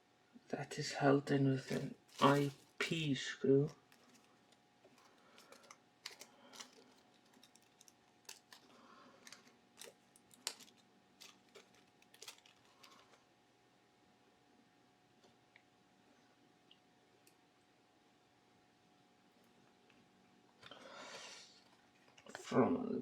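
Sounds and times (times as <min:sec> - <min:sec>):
light scraping of parts: 0:03.6 - 0:13.0
small plastic parts clicking: 0:03.7 - 0:13.1.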